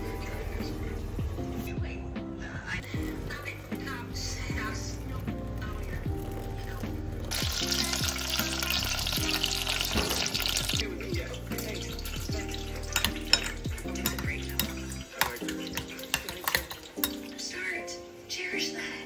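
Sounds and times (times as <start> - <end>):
soft background music: 0.0 - 19.0
dishes and utensils clinking: 7.3 - 17.4.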